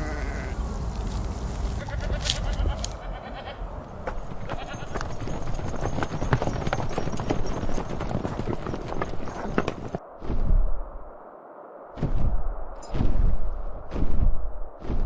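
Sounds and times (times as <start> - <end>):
hooves clattering: 0.0 - 10.0.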